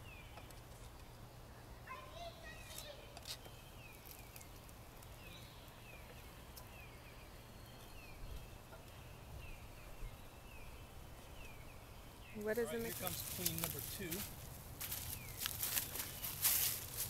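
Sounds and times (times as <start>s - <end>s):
small bird chirping: 1.9s - 14.2s.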